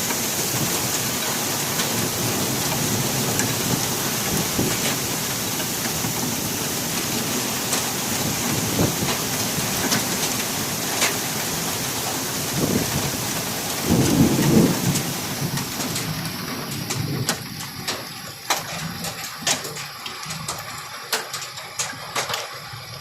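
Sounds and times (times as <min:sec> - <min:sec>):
low rumble of thunder: 0:00.0 - 0:06.5, 0:12.5 - 0:19.3
heavy rain: 0:00.0 - 0:23.0.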